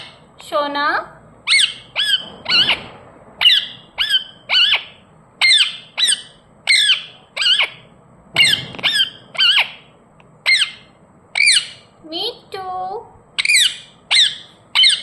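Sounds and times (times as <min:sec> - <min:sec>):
parrot squawking: 0:00.0 - 0:00.3, 0:01.4 - 0:11.9, 0:13.4 - 0:15.0.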